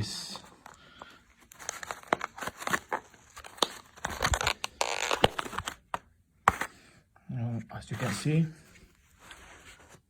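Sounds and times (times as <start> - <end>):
plastic packaging crinkling: 0.6 - 6.0.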